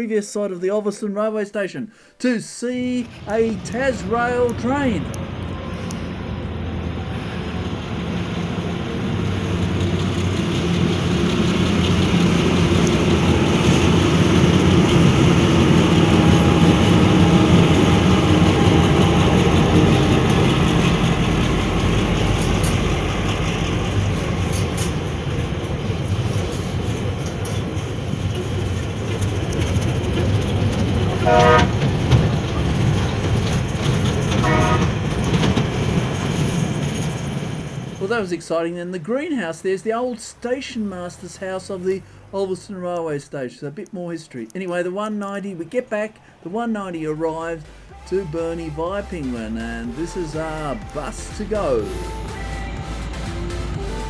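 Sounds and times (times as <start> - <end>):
freight train rumbling past: 2.4 - 43.5, 45.5 - 54.0
high-pitched tones: 47.0 - 54.0.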